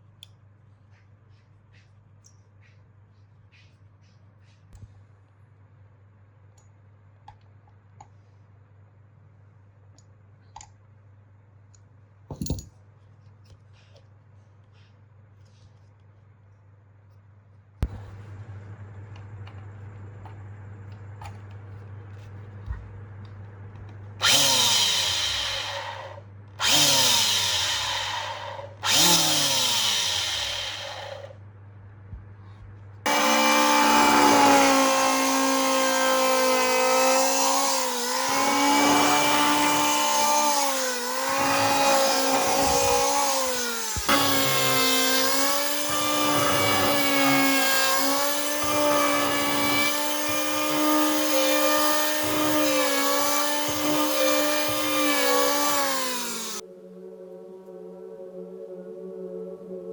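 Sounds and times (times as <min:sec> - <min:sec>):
electric hand planer whining: 0:24.2 - 0:31.3, 0:33.1 - 0:56.6.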